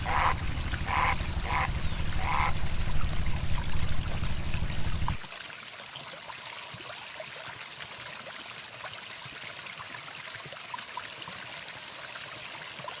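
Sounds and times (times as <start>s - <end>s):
faint ticks: 0.0s - 5.3s
running water rushing: 0.0s - 5.3s.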